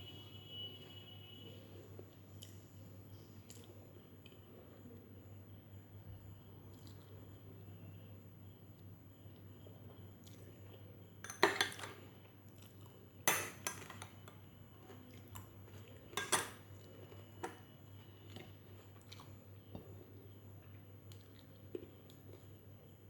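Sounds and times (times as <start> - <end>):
cutlery clinking on a plate: 11.3 - 12.0, 13.3 - 14.3, 16.1 - 16.7.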